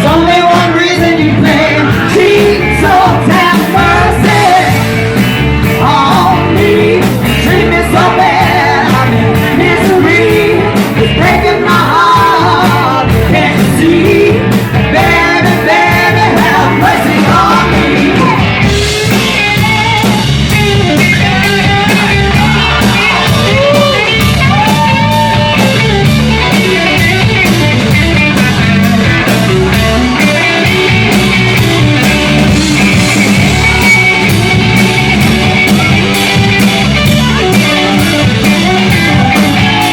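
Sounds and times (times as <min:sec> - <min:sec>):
person singing: 0:00.0 - 0:04.9, 0:05.7 - 0:19.4
rock song: 0:00.0 - 0:39.9.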